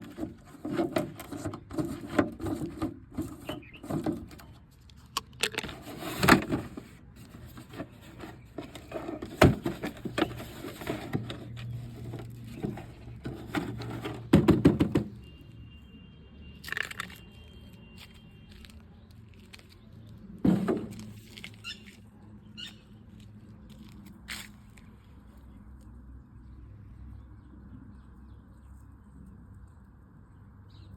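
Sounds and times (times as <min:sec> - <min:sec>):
scrapes: 0:00.0 - 0:15.1.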